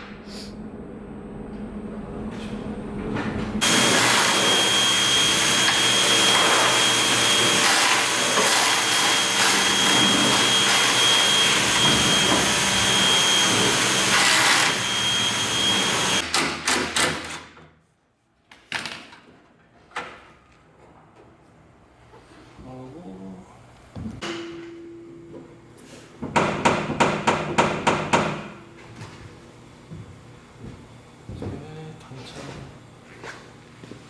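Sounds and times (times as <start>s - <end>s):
power tool whining: 3.6s - 16.2s.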